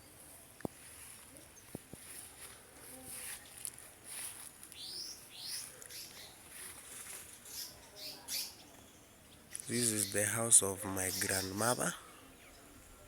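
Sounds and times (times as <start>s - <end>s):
birds chirping: 4.6s - 13.0s.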